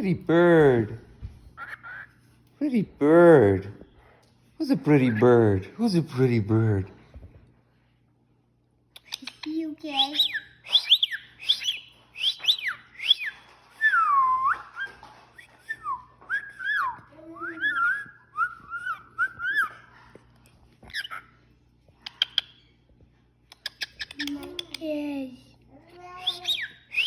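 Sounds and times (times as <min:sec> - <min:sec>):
cockatiel whistling: 0:09.9 - 0:15.0, 0:16.4 - 0:19.9, 0:26.2 - 0:27.0.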